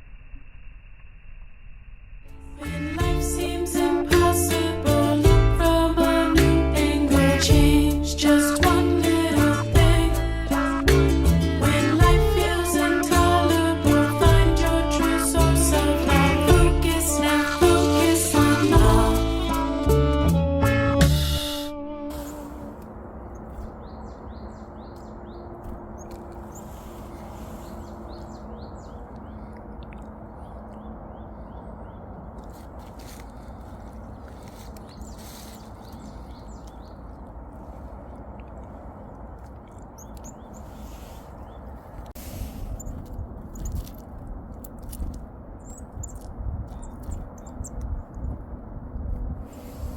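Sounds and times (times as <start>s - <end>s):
wind rumble on microphone: 2.4s - 49.9s
small birds chirping: 22.2s - 48.4s.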